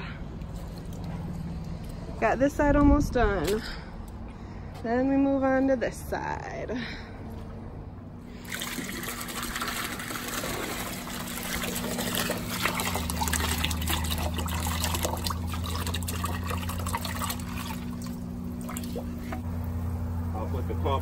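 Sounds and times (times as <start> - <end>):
low mechanical hum: 0.0 - 21.0
water trickling and splashing: 8.3 - 19.5.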